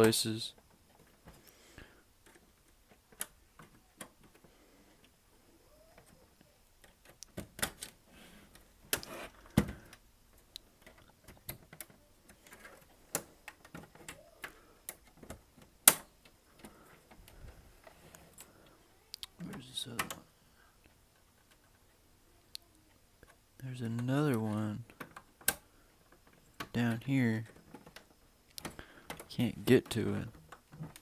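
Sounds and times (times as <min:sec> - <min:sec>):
metal scraping hard plastic: 0:07.7 - 0:09.8.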